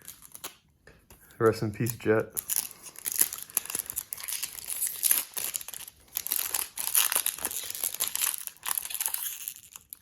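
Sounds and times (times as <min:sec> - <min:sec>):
foil wrapper crinkling: 0:01.8 - 0:10.0.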